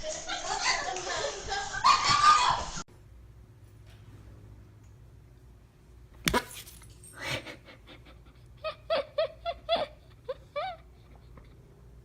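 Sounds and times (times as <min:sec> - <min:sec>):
high-pitched giggles: 0:07.2 - 0:11.6.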